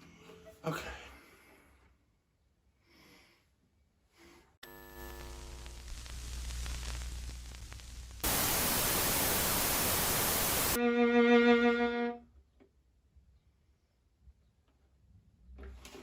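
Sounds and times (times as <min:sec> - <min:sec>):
white-noise static burst: 0:04.6 - 0:10.8
buzzy pitched tone: 0:04.7 - 0:10.8.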